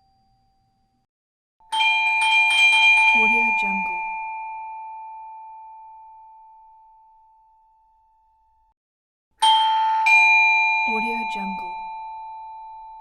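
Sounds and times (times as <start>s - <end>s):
doorbell chime: 1.6s - 8.3s, 9.4s - 13.0s.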